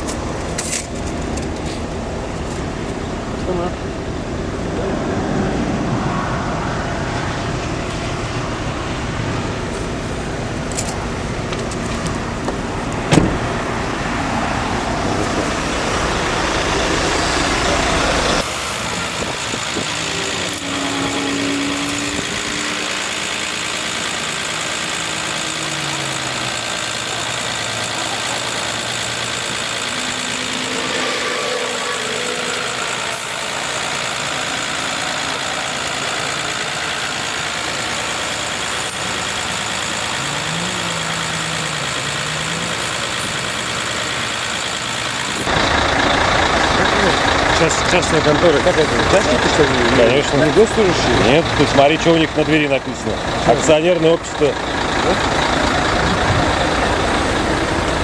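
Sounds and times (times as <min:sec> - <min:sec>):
engine humming sliding in pitch: 0:00.0 - 0:58.0
road traffic rush: 0:00.0 - 0:58.0.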